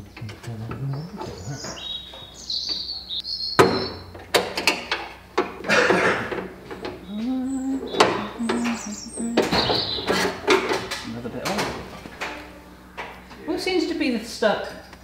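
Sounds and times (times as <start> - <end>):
sharp knock: 3.6 - 4.0.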